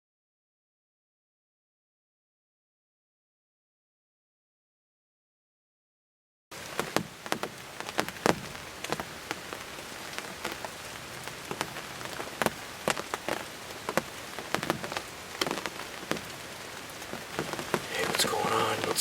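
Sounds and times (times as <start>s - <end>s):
rain falling with soft hiss: 6.5s - 19.0s.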